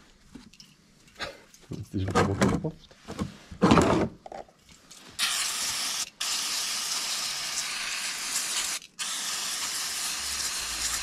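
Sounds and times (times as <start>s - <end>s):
aerosol spray can hissing: 5.2s - 11.0s.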